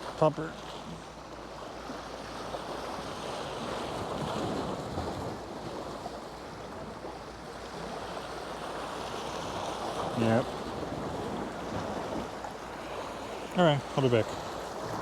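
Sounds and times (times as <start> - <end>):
sea waves washing in: 0.0 - 15.0
wind on the microphone: 3.4 - 7.1.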